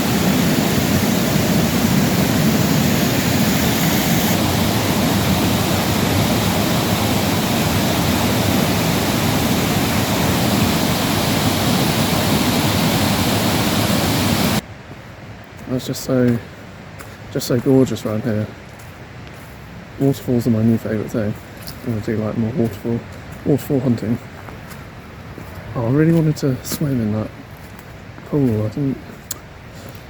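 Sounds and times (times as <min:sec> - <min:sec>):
stream water rushing: 0:00.0 - 0:14.7.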